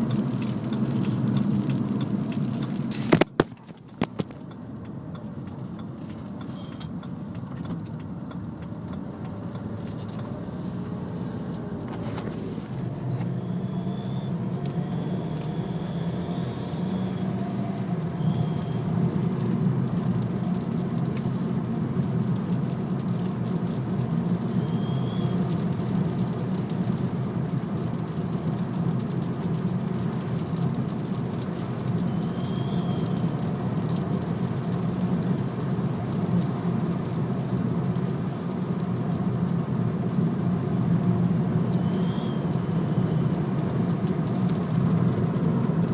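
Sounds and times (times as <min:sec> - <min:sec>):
diesel car engine: 0:00.0 - 0:45.9
road noise: 0:00.0 - 0:45.9
thin high-pitched whistle: 0:18.2 - 0:18.8, 0:24.6 - 0:25.3, 0:32.1 - 0:33.1, 0:41.8 - 0:42.4.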